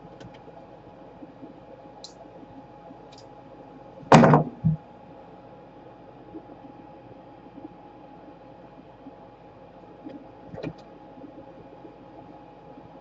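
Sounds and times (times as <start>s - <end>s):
loud knock: 4.1s - 4.8s.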